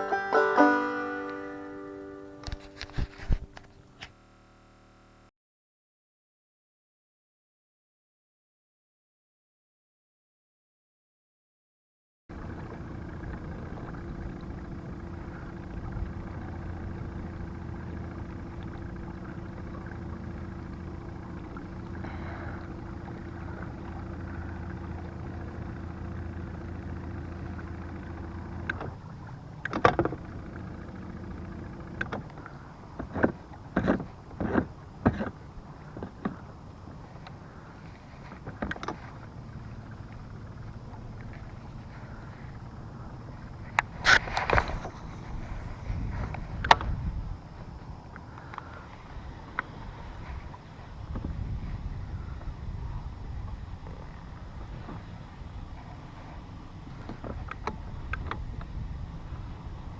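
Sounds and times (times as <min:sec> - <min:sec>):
boat motor humming: 0:00.0 - 0:05.3, 0:12.3 - 0:59.9
knocks and clicks on boat: 0:12.3 - 0:59.9.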